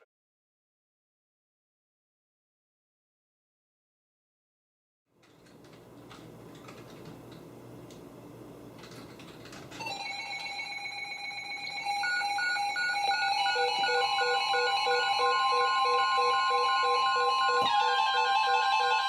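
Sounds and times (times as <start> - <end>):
steady electronic alarm tones: 9.8 - 19.0.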